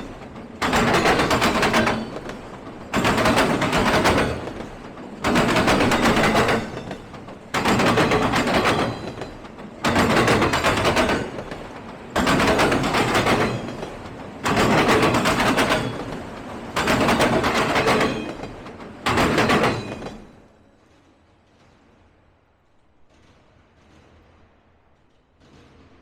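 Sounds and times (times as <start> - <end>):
train wheels clattering over rails: 0.0 - 26.0.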